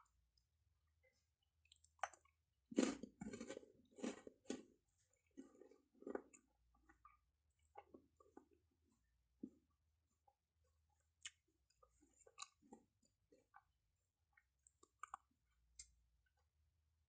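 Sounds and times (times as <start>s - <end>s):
person chewing chocolate: 0.0s - 16.6s.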